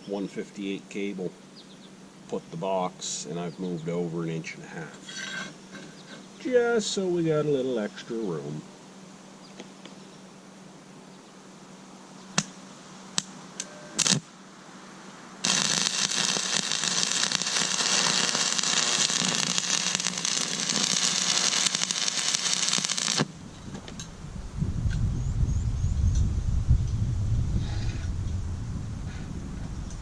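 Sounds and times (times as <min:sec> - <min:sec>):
welding arc crackling and hissing: 0:14.0 - 0:14.3, 0:15.4 - 0:23.4.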